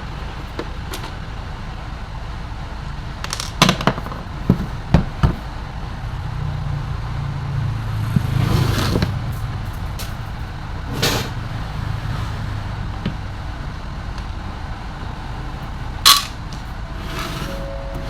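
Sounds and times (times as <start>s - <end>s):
tools and parts clicking: 16.1s - 16.7s.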